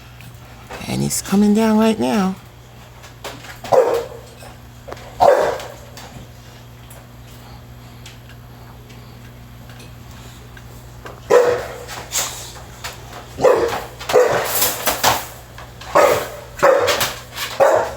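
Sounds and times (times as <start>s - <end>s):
dog barking: 3.7s - 4.4s, 5.2s - 5.8s, 11.3s - 11.9s, 13.4s - 14.9s, 15.9s - 17.9s.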